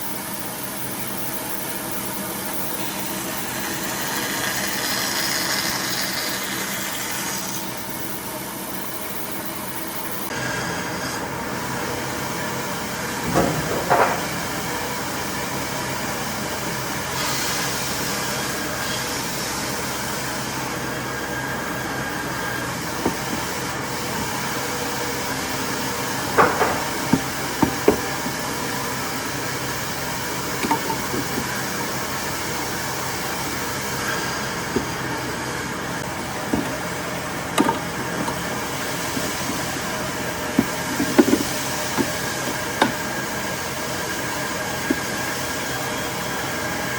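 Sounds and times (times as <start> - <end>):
steady mechanical hum: 0.0 - 46.9
sharp knocks: 13.3 - 14.4, 26.3 - 28.4.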